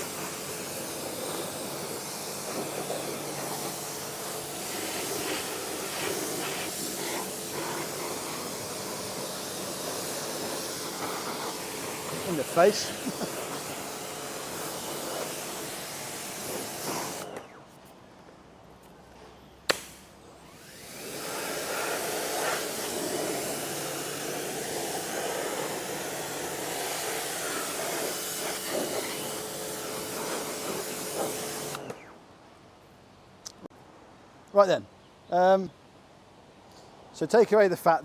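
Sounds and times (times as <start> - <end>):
pressure washer spraying: 0.0 - 17.4, 19.7 - 32.0
sharp click: 19.7 - 20.0.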